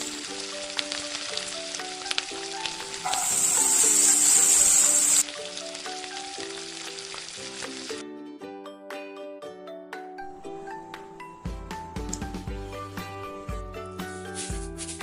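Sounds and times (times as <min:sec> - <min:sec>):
food sizzling in a frying pan: 0:00.0 - 0:08.0.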